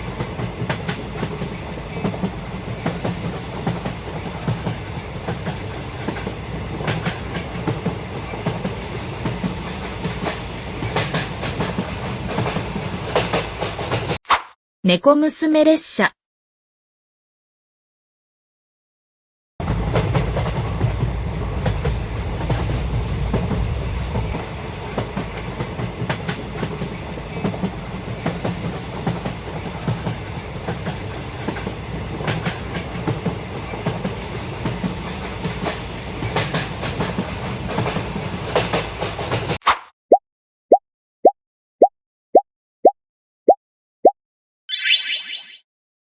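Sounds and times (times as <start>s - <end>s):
train wheels clacking: 0.1s - 14.2s, 24.9s - 39.6s.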